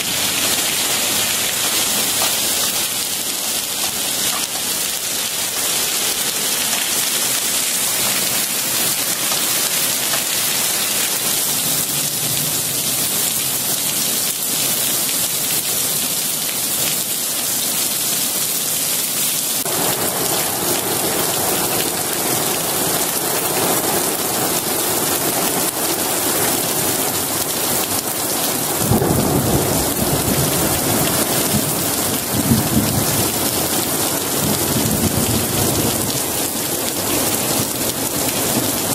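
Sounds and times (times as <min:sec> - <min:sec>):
heavy rain pouring: 0:00.0 - 0:38.9
thunder rumbling: 0:19.6 - 0:38.9.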